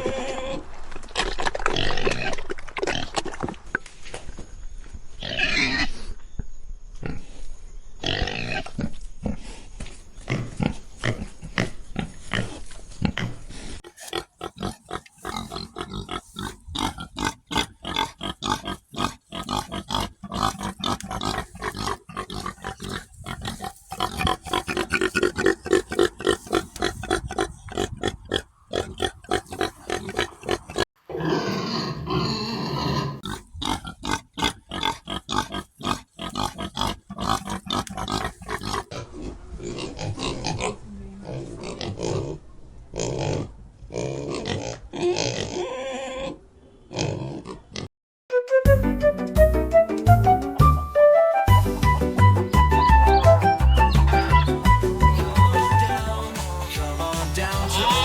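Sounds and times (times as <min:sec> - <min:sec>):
pigs grunting and oinking: 0:00.0 - 0:00.6, 0:01.2 - 0:03.4, 0:05.2 - 0:06.0, 0:08.0 - 0:09.6, 0:10.2 - 0:47.9, 0:52.3 - 0:55.9.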